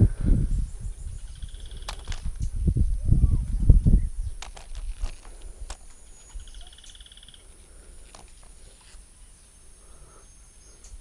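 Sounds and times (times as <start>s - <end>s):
low wind rumble: 0.0s - 11.0s.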